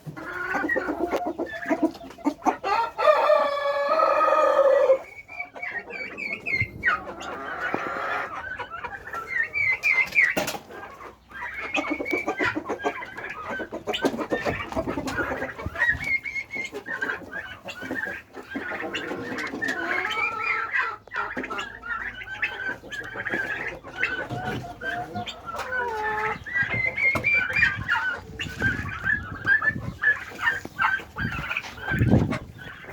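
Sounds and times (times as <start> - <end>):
chickens clucking: 0.0 - 32.9.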